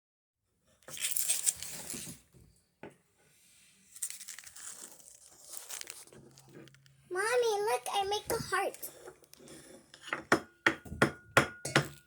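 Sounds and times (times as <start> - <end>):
rustling and crinkling: 0.7 - 2.6, 3.3 - 9.9.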